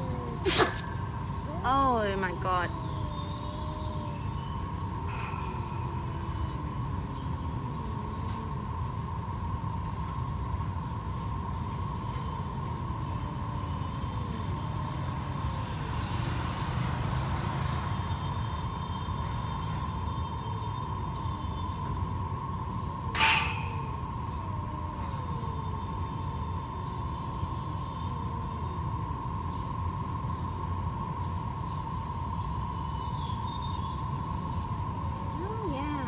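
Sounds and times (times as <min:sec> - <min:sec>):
cats yowling: 0:00.0 - 0:08.6, 0:23.2 - 0:26.1
small birds chirping: 0:00.0 - 0:11.2, 0:11.8 - 0:36.0
constant high hum: 0:00.0 - 0:36.0
low traffic rumble: 0:00.0 - 0:36.0.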